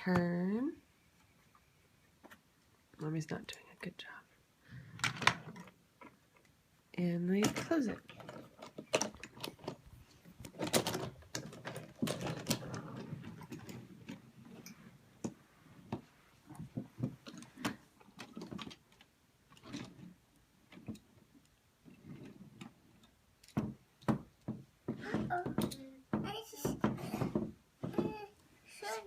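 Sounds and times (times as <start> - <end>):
plastic toy train pieces clattering: 10.4 - 14.7.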